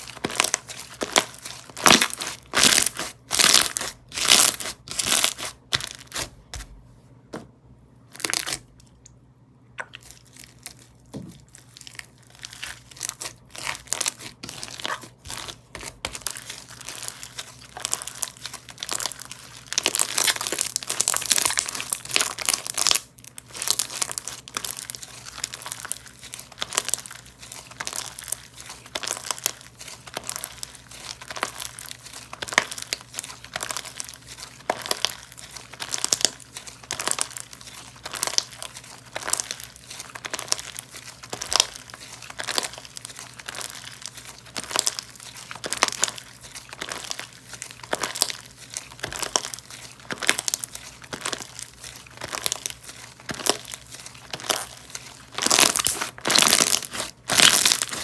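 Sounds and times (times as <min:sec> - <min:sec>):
slime crackling and popping: 0:00.0 - 0:06.3, 0:08.1 - 0:08.8, 0:09.8 - 0:58.0.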